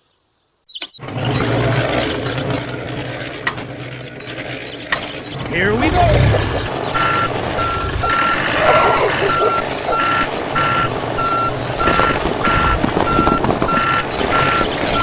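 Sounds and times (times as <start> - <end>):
mechanical clattering and rattling: 1.0 - 15.0
vehicle reversing beeper: 5.8 - 15.0.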